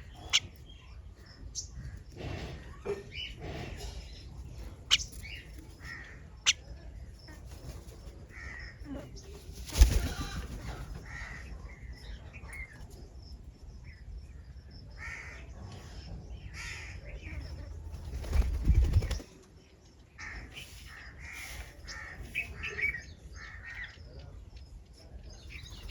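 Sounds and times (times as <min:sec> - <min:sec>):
bird calls: 0:00.0 - 0:13.0
wing flapping: 0:09.4 - 0:11.0, 0:17.9 - 0:19.4.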